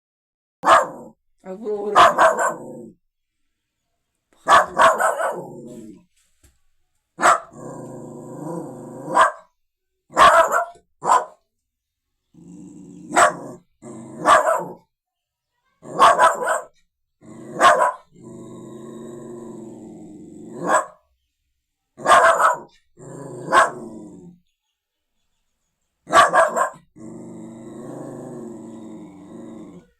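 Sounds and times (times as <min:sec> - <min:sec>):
puppy barking: 0:00.6 - 0:01.1, 0:01.9 - 0:02.8, 0:04.4 - 0:05.8, 0:07.2 - 0:07.6, 0:09.0 - 0:09.5, 0:10.1 - 0:11.4, 0:13.1 - 0:13.6, 0:14.2 - 0:14.8, 0:15.8 - 0:16.8, 0:17.5 - 0:18.1, 0:20.5 - 0:21.0, 0:22.0 - 0:23.9, 0:26.1 - 0:26.9
puppy growling: 0:01.9 - 0:03.0, 0:04.5 - 0:06.1, 0:07.2 - 0:09.3, 0:12.3 - 0:14.8, 0:17.2 - 0:20.8, 0:22.0 - 0:24.4, 0:26.1 - 0:29.9.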